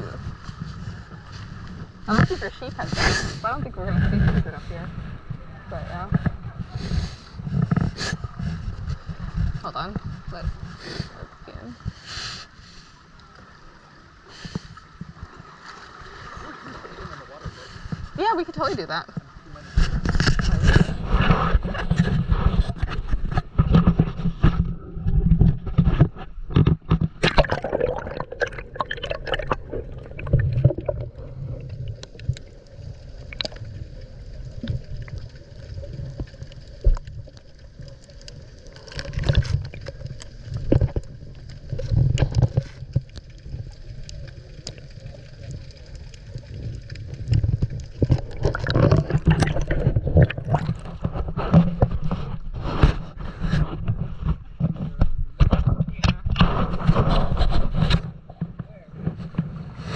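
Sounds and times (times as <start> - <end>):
water gurgling around kayak: 0.0 - 59.9
knocks and splashes: 14.5 - 32.5, 38.8 - 43.8, 46.6 - 59.6.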